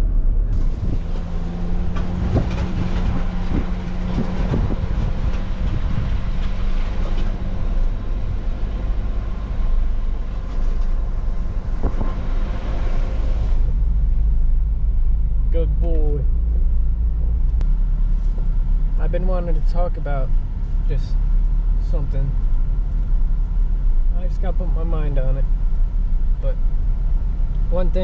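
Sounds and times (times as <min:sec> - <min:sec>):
car engine hum: 0:00.0 - 0:28.0
knocks and rattles over bumps: 0:00.6 - 0:13.2.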